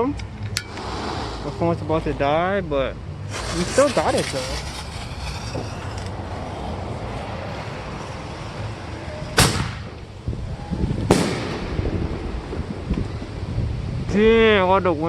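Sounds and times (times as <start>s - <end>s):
wind buffeting microphone: 0.0s - 15.0s
firework bangs: 3.3s - 6.2s, 9.4s - 14.0s.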